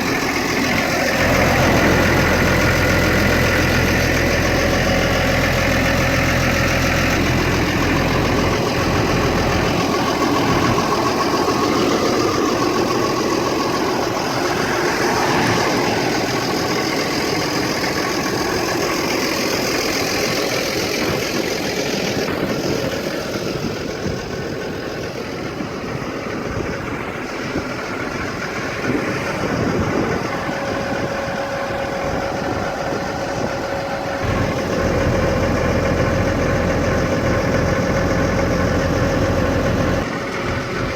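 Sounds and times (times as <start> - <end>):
tractor diesel engine idling: 0.0 - 40.9.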